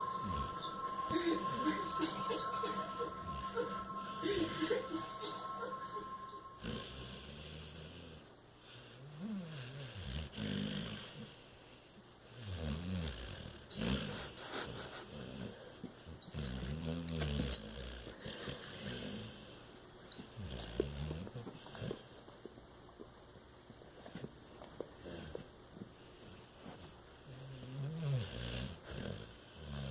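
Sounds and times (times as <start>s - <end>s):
dog snoring: 27.2s - 29.9s.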